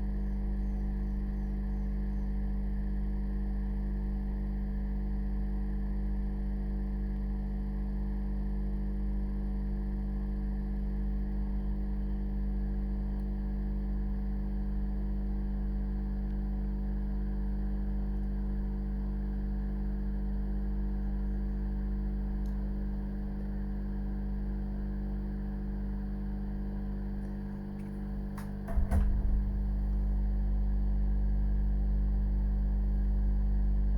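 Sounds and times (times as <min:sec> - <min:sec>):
steady electrical hum: 0:07.8 - 0:33.9.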